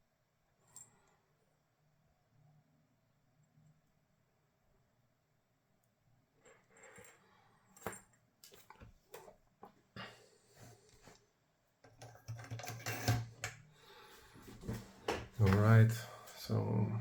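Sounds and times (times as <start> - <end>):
tools clattering on workbench: 11.9 - 13.6.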